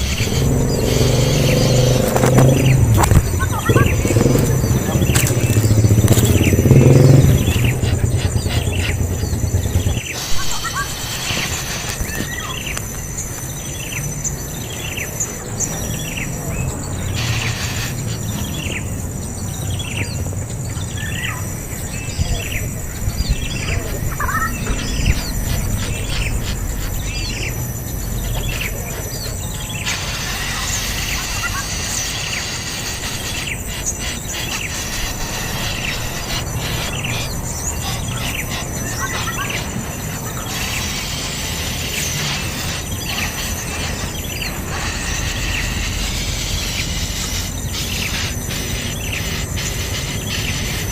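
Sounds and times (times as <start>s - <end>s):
bird chirping: 0.0s - 50.9s
high-pitched insect drone: 0.0s - 50.9s
low background rumble: 21.7s - 29.8s.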